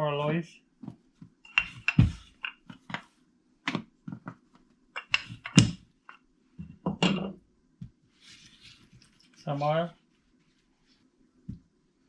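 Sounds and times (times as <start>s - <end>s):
rolling pin knocking on board: 1.6s - 2.3s.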